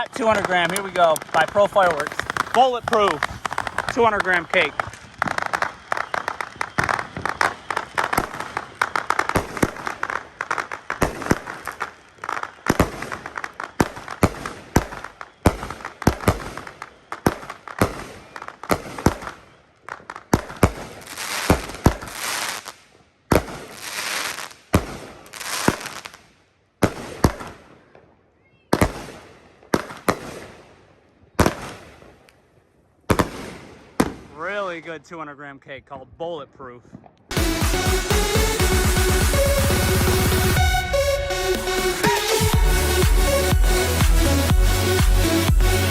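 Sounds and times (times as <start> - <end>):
firework hiss: 0.0 - 11.9
fireworks cake bangs: 0.0 - 28.0, 28.7 - 30.8, 31.4 - 32.3, 33.1 - 34.9.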